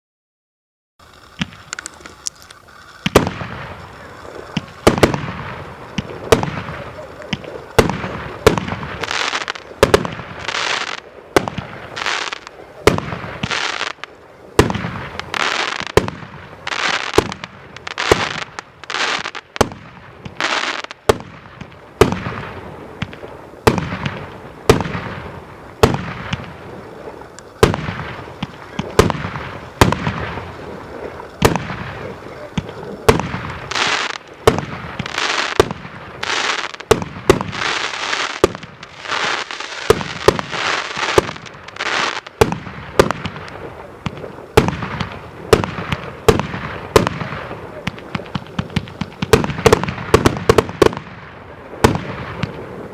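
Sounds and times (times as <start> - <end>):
fireworks cake firing shots: 3.0 - 52.9.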